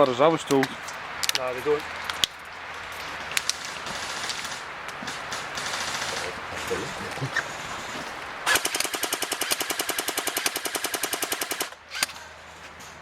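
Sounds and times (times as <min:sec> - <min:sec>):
airsoft rifle full-auto firing: 0:03.5 - 0:06.3, 0:08.4 - 0:12.2.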